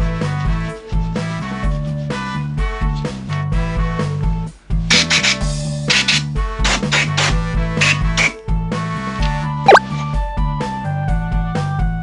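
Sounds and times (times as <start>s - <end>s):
upbeat background music: 9.0s - 10.0s.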